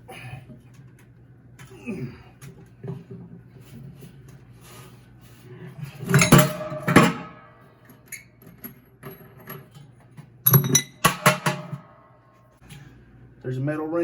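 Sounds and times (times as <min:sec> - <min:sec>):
metal washers clanking: 0:06.0 - 0:11.9.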